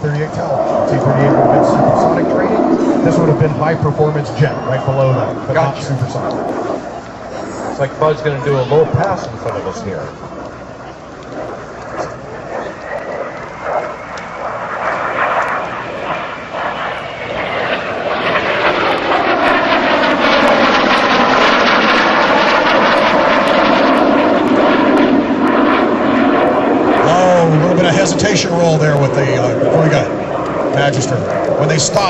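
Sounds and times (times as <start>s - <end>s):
jet passing overhead: 0.0s - 32.0s
thin whistling whine: 4.0s - 5.8s, 10.8s - 18.4s.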